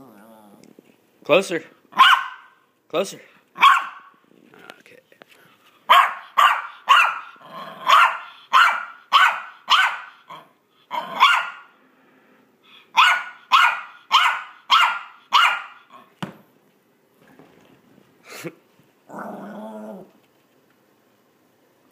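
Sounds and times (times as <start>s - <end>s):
dog barking: 2.0s - 2.6s, 3.6s - 4.2s, 5.9s - 11.8s, 12.9s - 16.1s
single knock: 16.2s - 16.4s.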